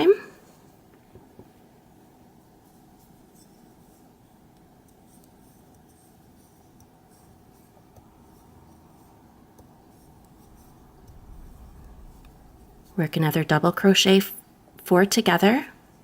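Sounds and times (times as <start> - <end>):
low room hum: 0.0 - 16.0
crochet hook rustling and ticking: 2.2 - 13.9.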